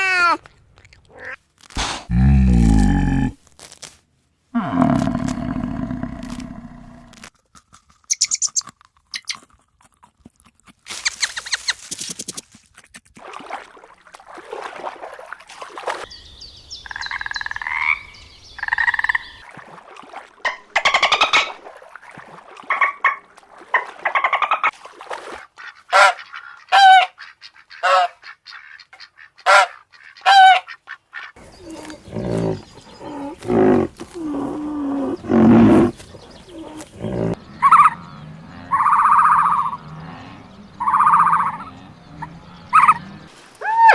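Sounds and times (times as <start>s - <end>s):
animal calls: 29.4s - 43.9s.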